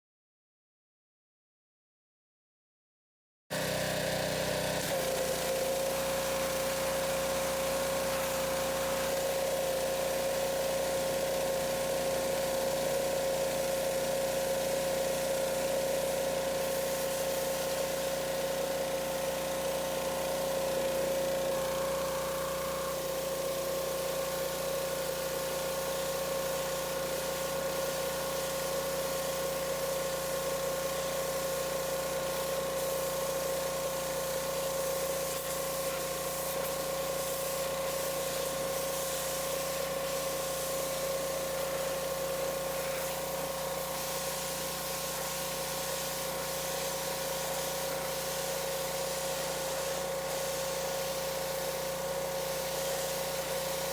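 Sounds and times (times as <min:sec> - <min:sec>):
pressure washer motor hum: 0:03.5 - 0:53.9
water jet spraying: 0:35.2 - 0:53.8.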